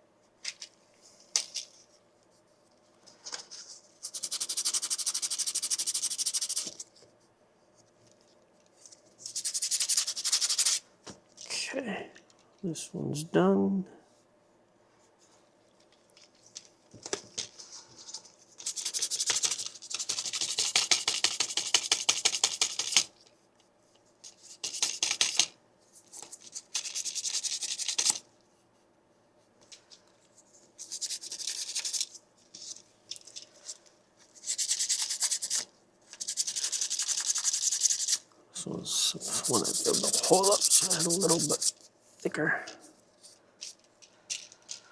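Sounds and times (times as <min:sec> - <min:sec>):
hand sanding plastic: 0:04.0 - 0:06.8, 0:09.3 - 0:10.8, 0:34.3 - 0:38.2, 0:38.9 - 0:41.8.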